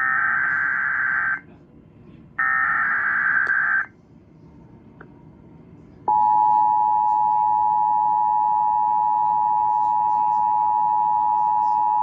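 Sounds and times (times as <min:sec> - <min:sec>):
two-tone attention signal: 0:06.1 - 0:12.0.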